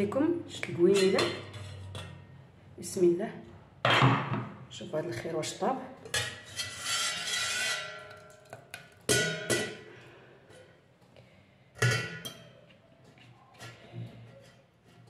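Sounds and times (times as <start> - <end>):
metal pot and lid clanking: 0.9 - 2.3, 6.0 - 10.7, 11.8 - 12.6.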